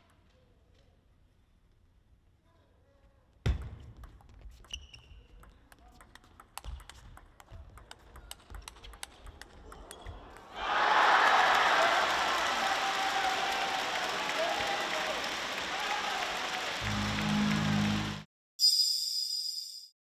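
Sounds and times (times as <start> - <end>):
table tennis ball clicking: 4.0 - 10.2
crowd applause: 9.8 - 18.3.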